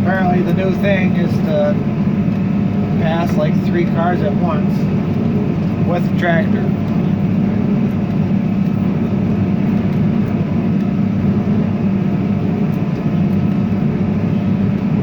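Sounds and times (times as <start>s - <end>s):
tractor engine drone: 0.0s - 15.0s.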